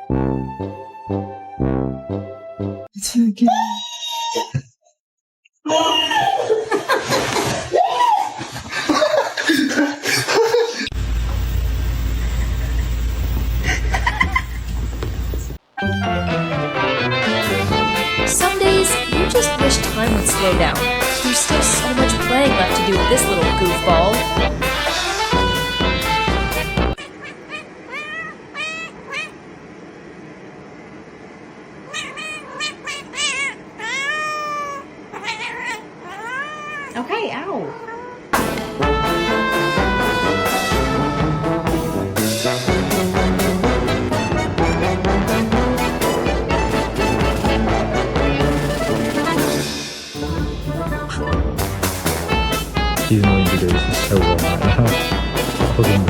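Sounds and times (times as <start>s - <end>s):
background music: 0.0s - 2.9s, 15.8s - 27.0s, 38.4s - 56.0s
people laughing: 5.8s - 10.9s, 13.6s - 14.7s, 53.1s - 55.1s
steady low hum: 10.5s - 15.6s, 17.6s - 34.0s, 38.3s - 56.0s
cat meowing: 27.0s - 29.4s, 31.8s - 38.3s.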